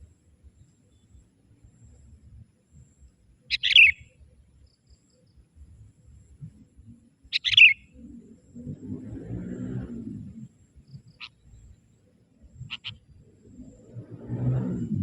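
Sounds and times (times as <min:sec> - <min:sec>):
low drawn-out sound: 0:07.9 - 0:11.1, 0:13.2 - 0:15.0.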